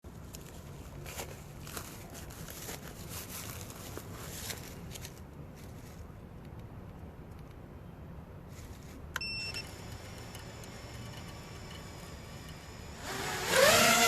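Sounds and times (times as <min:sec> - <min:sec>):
click with high beep: 0:09.2 - 0:09.7
drone motors whining: 0:09.6 - 0:14.0.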